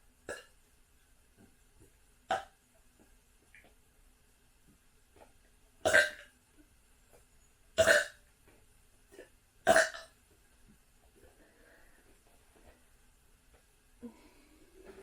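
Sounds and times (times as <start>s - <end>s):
loud burps: 0.3s - 0.6s, 2.3s - 2.5s, 5.8s - 6.3s, 7.8s - 8.2s, 9.6s - 10.1s.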